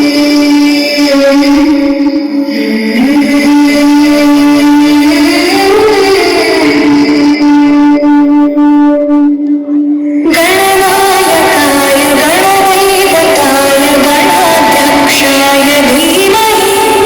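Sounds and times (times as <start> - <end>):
song with sung melody: 0.0 - 17.0
held note over sound system: 5.4 - 17.0.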